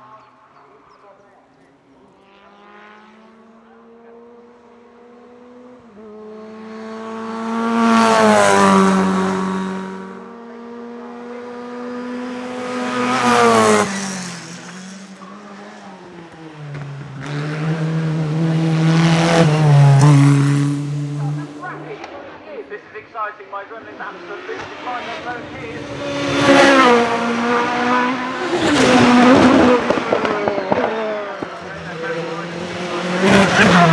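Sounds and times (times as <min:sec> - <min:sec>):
race car engine accelerating: 0:02.2 - 0:22.4, 0:24.0 - 0:33.9.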